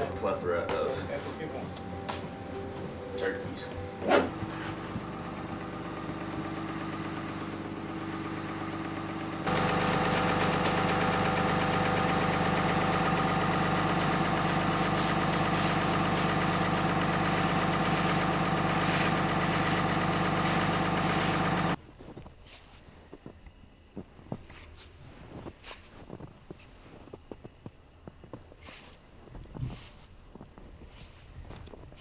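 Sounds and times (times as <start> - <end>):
engine running steadily: 0.0 - 21.8.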